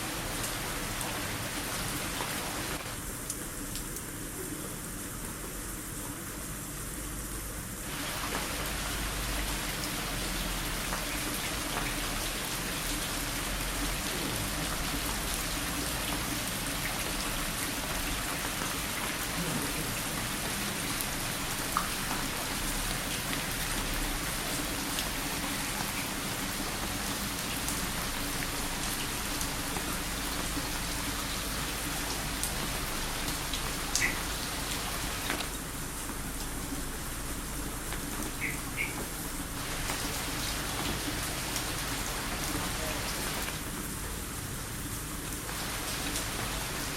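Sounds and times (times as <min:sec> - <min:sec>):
rain pattering on surfaces: 0:00.0 - 0:46.9
water drip ticks: 0:32.4 - 0:36.5, 0:37.9 - 0:40.0.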